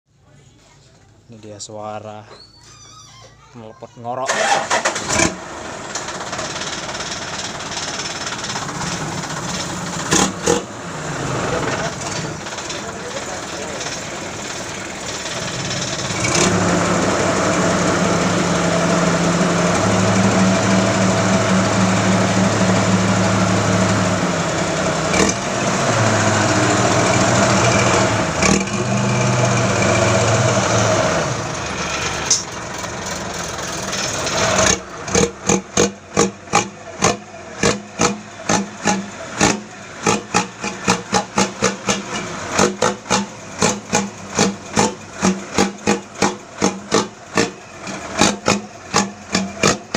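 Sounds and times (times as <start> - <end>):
diesel engine snoring exhaust: 10.0 - 13.8, 15.4 - 32.2, 34.1 - 49.9
short sharp exhaust blasts: 34.1 - 49.9.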